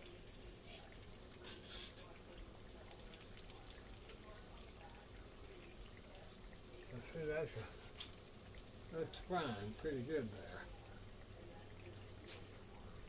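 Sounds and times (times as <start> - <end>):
pies sizzling in hot grease: 0.0 - 13.0.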